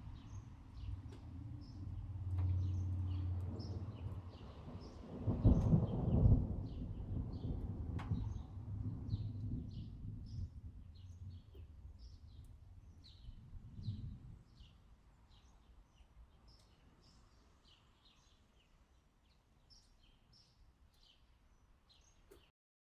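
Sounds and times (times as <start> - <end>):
thunder rumbling: 2.9 - 11.5.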